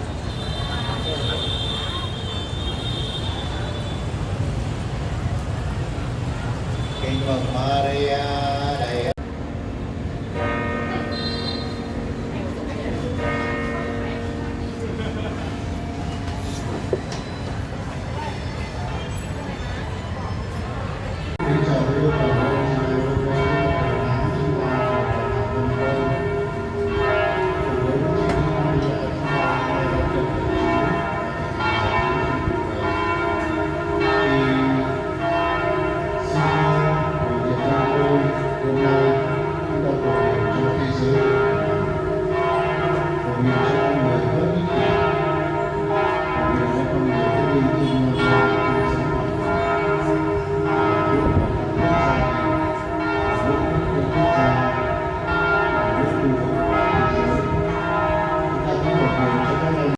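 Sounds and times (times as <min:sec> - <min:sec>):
church bells pealing: 0:03.4 - 0:59.9.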